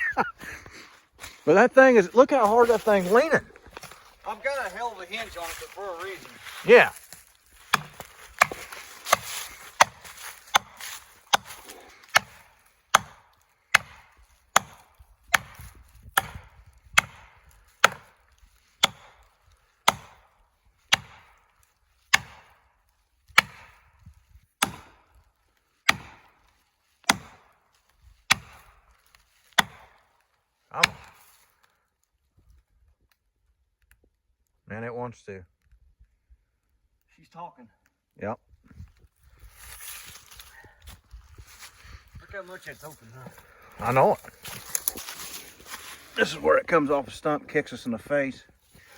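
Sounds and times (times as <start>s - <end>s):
hammer striking wedges: 7.7s - 15.6s, 16.2s - 16.4s, 17.0s - 18.1s, 18.8s - 19.1s, 19.9s - 20.2s, 20.9s - 21.3s, 22.1s - 22.5s, 23.4s - 23.8s, 24.6s - 25.0s, 25.9s - 26.3s, 27.1s - 27.4s, 28.3s - 28.6s, 29.6s - 29.9s, 30.8s - 31.2s.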